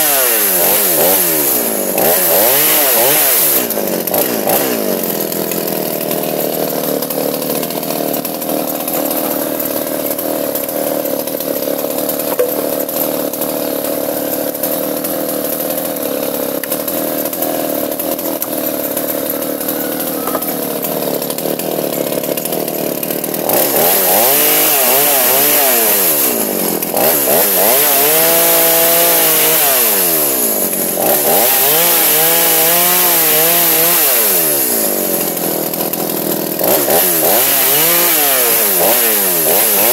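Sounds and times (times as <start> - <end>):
chainsaw engine revving: 0.0 - 39.9.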